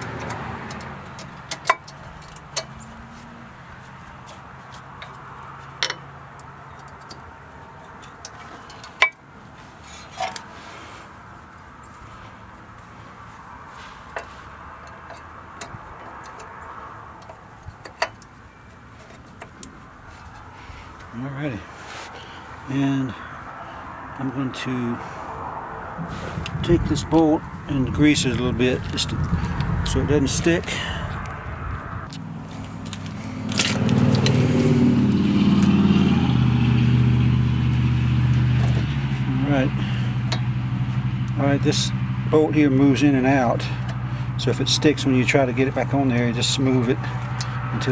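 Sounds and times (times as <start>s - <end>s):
vehicle engine running: 25.6s - 47.9s
brake pads clicking: 32.1s - 34.4s.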